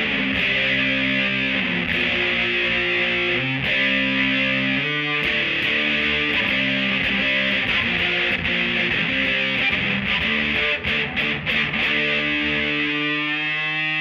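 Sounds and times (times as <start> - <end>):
electric guitar strumming chords: 0.0 - 14.0.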